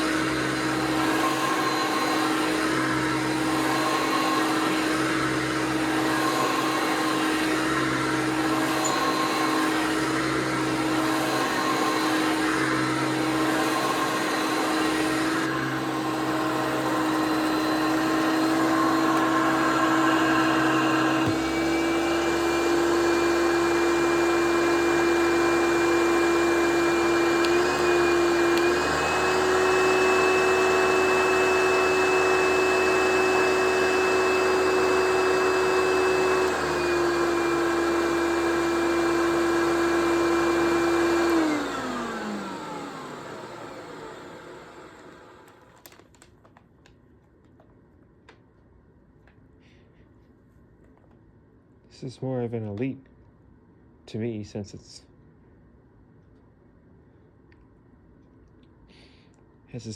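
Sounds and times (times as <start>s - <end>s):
vacuum cleaner motor whine: 0.0s - 46.0s.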